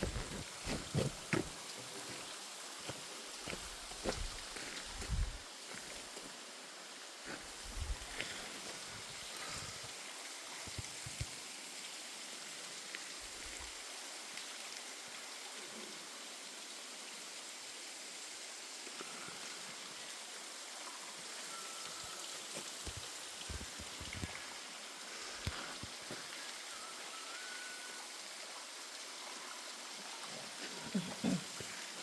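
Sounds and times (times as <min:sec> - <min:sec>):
waterfall rushing: 0:21.4 - 0:32.0.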